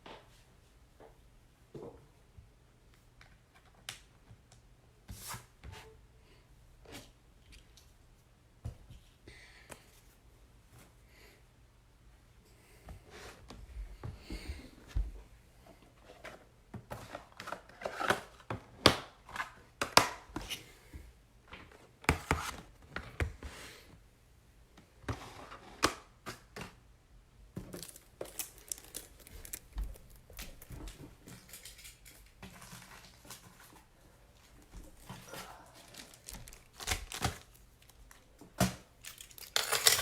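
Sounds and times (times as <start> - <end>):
packaging crinkling and tearing: 27.6 - 33.4, 34.9 - 40.0.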